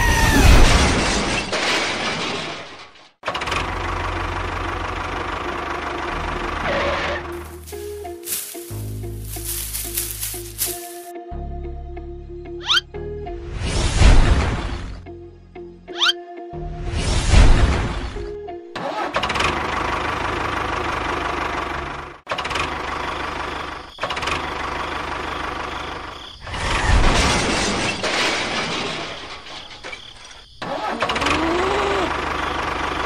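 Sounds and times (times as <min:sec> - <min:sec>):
engine running steadily: 0:03.3 - 0:11.0.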